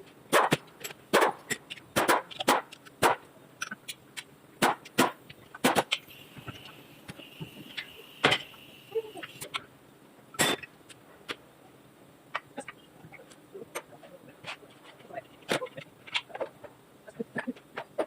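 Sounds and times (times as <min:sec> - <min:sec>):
hand tools clicking and knocking: 0:00.3 - 0:08.6
faint high whine: 0:06.0 - 0:10.7.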